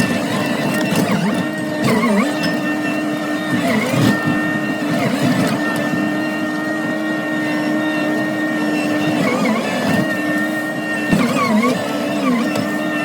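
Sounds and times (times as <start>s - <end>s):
small engine running at high speed: 0.0s - 13.0s.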